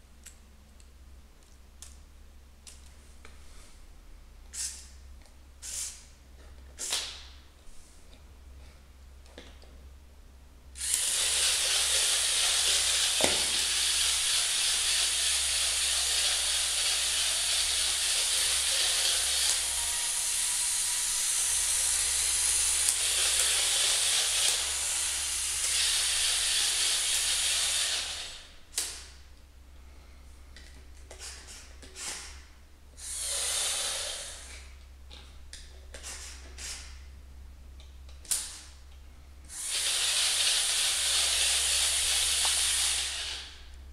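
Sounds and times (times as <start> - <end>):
loud steady hiss: 5.6 - 6.1.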